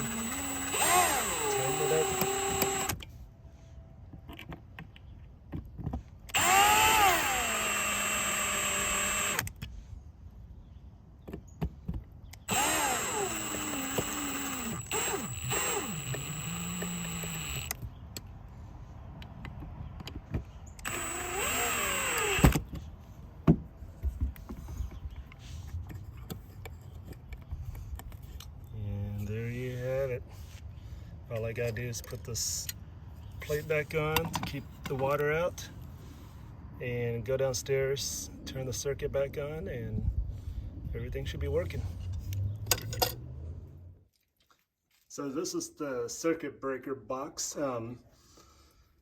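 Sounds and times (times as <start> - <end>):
cordless drill driving screws: 0.0 - 3.0, 6.3 - 9.6, 12.5 - 17.8, 20.8 - 22.7.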